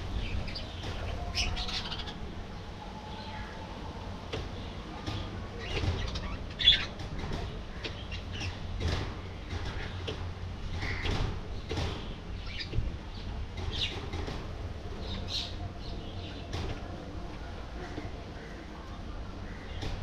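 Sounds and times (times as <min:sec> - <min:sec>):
budgerigars chirping and chattering: 0:05.6 - 0:06.9, 0:12.4 - 0:14.0.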